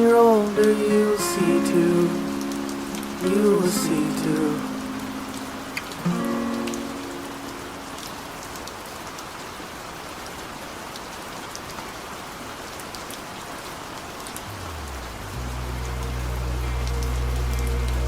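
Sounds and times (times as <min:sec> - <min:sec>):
steady rain falling: 0:00.0 - 0:18.0
low sustained music notes: 0:00.6 - 0:08.2, 0:14.4 - 0:18.0
sharp rain drop ticks: 0:12.8 - 0:18.0.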